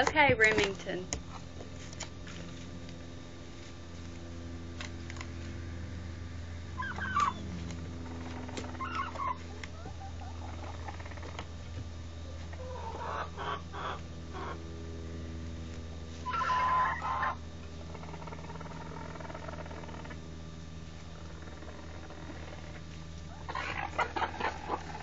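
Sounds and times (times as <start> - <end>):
low hum: 0.0 - 25.0
chicken clucking: 8.5 - 11.1, 12.6 - 14.6, 23.3 - 25.0.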